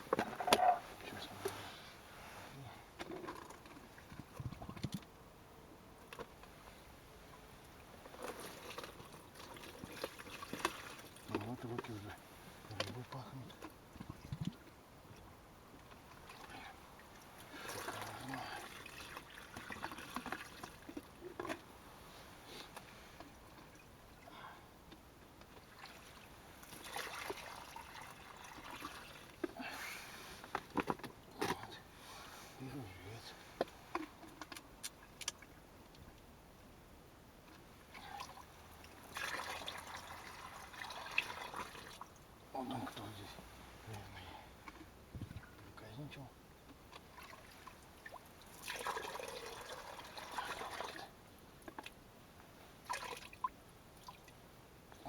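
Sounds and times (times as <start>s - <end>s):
water trickling and splashing: 7.3s - 14.6s, 15.8s - 21.6s, 25.5s - 29.7s, 37.8s - 44.0s, 46.9s - 52.0s, 52.7s - 54.4s.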